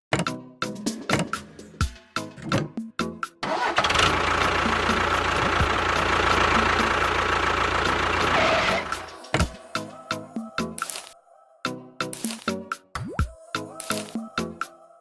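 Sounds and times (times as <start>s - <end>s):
engine running: 3.4s - 9.3s.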